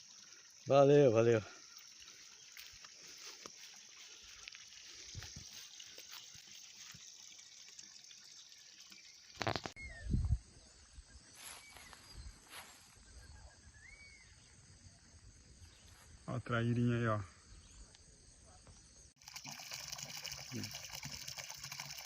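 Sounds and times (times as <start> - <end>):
water trickling: 0.0 - 9.8, 19.2 - 22.0
small chirps: 1.6 - 10.1.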